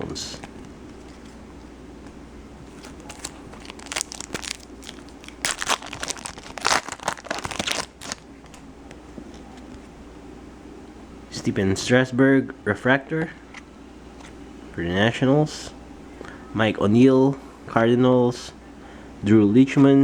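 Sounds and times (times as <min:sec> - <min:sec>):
foil wrapper tearing and crinkling: 0:02.7 - 0:08.2.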